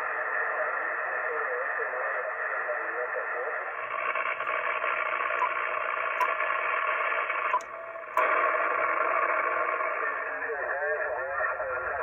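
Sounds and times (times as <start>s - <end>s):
radio static hiss: 0.0s - 12.0s
clicks: 4.1s - 6.6s, 7.4s - 8.4s.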